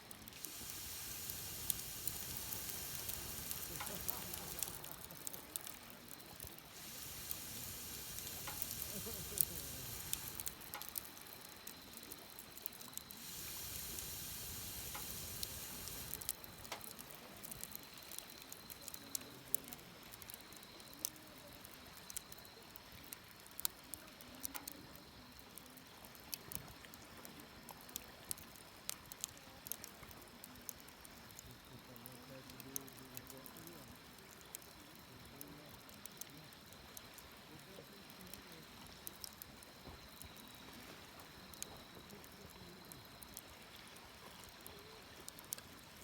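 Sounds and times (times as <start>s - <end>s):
wood fire crackling: 0.0s - 46.0s
fire hissing: 0.1s - 22.8s
sharp pops: 0.4s - 6.2s, 6.8s - 11.3s, 13.0s - 17.7s.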